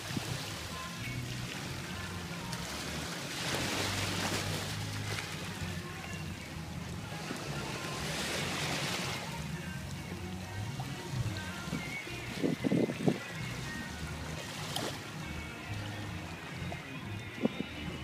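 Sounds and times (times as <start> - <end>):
seawater sloshing and splashing: 0.0 - 18.0
wind buffeting microphone: 11.7 - 13.4.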